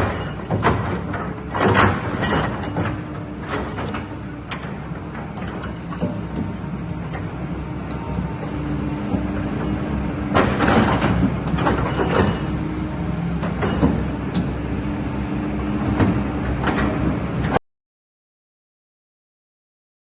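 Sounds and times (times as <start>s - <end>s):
machine clanks and knocks: 0.0s - 7.4s, 8.0s - 14.6s, 15.8s - 17.6s
excavator diesel engine running: 0.0s - 17.6s.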